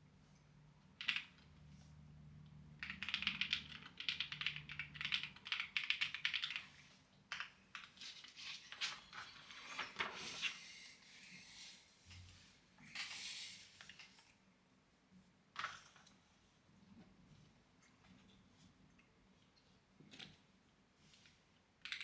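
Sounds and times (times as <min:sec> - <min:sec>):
computer keyboard typing: 0:00.9 - 0:01.5, 0:02.8 - 0:08.2, 0:21.8 - 0:22.0.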